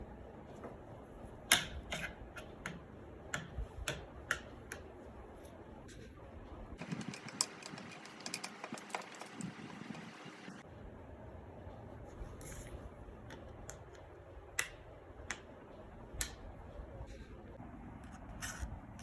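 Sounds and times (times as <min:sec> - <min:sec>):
small hard parts clicking: 0:06.8 - 0:10.2.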